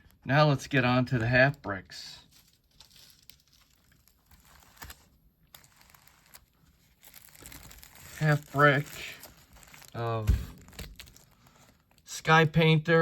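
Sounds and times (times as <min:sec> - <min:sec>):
packaging rustling and crinkling: 0:02.2 - 0:12.1.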